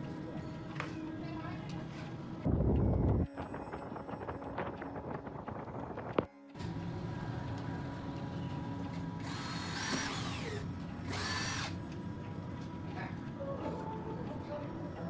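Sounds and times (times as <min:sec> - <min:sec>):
steady hum: 0:00.0 - 0:15.0
power tool whine: 0:09.2 - 0:11.8.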